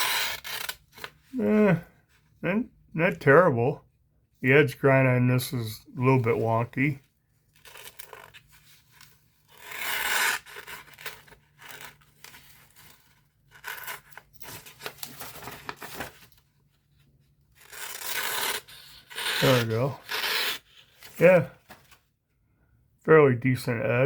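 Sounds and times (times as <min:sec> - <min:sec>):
knife cutting paper: 0:09.0 - 0:16.1, 0:17.6 - 0:21.2.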